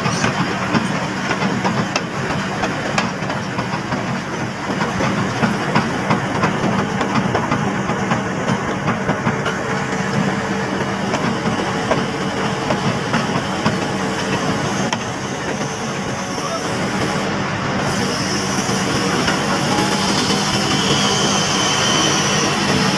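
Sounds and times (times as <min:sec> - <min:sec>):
diesel engine of machinery running: 0:00.0 - 0:22.9
hiss: 0:13.1 - 0:22.9.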